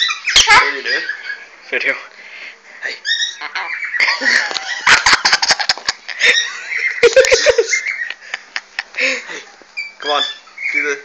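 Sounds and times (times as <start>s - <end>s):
parrot squawking: 0.0s - 1.5s, 3.0s - 4.1s, 9.8s - 11.0s.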